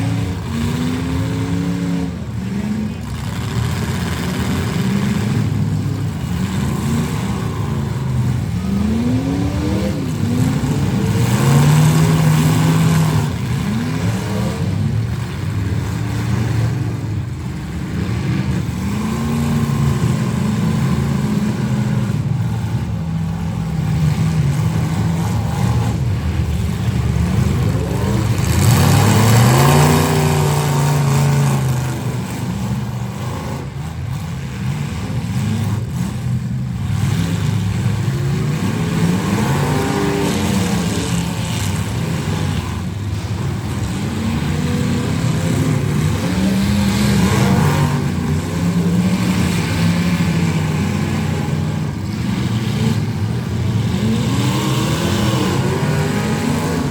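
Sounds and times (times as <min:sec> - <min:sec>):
car engines revving: 0:00.0 - 0:56.9
steady noisy rumble: 0:00.0 - 0:56.9.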